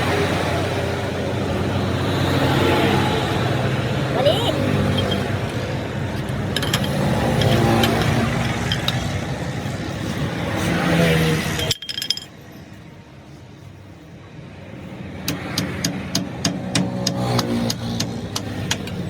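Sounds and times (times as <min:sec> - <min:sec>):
busy vehicle noise: 0:00.0 - 0:19.0
light metallic clinks: 0:04.8 - 0:05.7.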